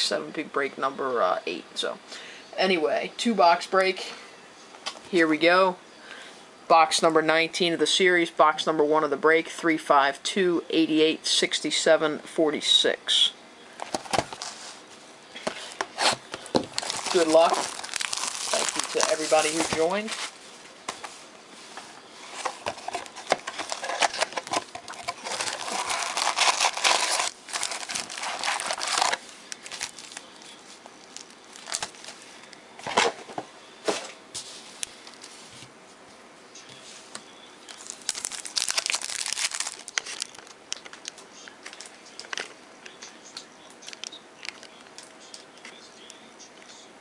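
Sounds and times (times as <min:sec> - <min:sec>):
plastic shrink wrap crinkling: 0:15.6 - 0:20.4, 0:22.3 - 0:32.5, 0:37.6 - 0:42.5.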